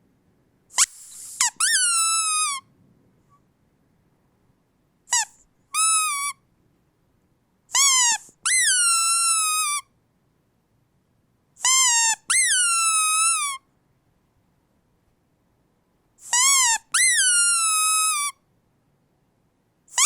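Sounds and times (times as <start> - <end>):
rubber dog toy squeaking: 0.7 - 2.6, 5.1 - 6.4, 7.7 - 9.9, 11.6 - 13.6, 16.2 - 18.4.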